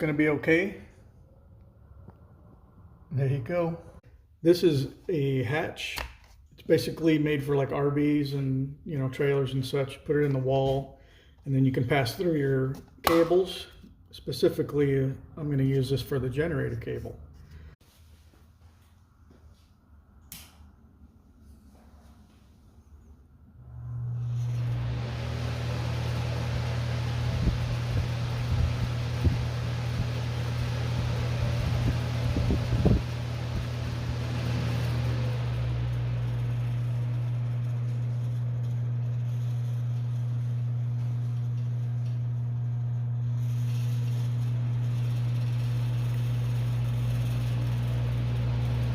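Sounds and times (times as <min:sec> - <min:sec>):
fan motor hum: 0:23.5 - 0:48.9
fan air rush: 0:23.6 - 0:38.0.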